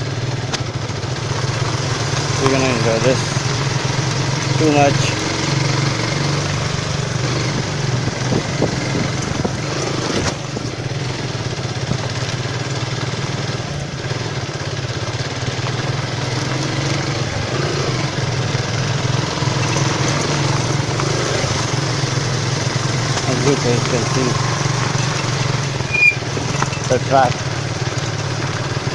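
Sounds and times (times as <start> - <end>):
motorcycle engine running: 0.0 - 28.9
wind noise on microphone: 7.4 - 10.7.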